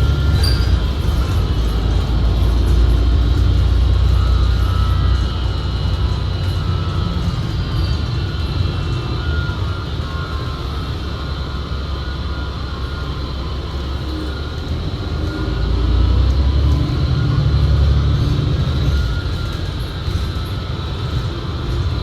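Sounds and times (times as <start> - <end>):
bus engine and road rumble: 0.0 - 22.0
high transmission whine: 0.0 - 22.0.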